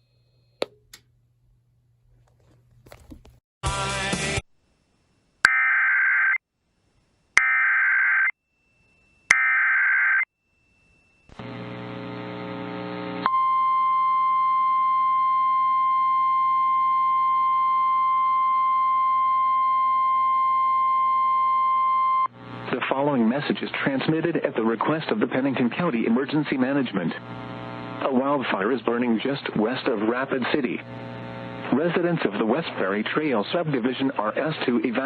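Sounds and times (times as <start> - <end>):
radio hum and hiss: 11.3 - 13.3, 22.3 - 35.0.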